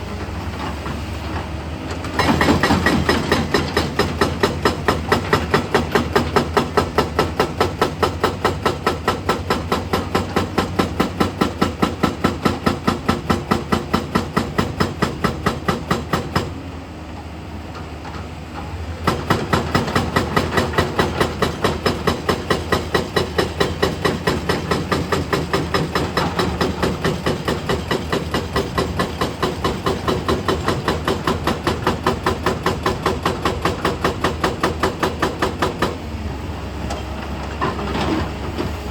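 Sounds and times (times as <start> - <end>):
hydraulic breaker hammering: 2.2 - 16.6, 19.0 - 36.0.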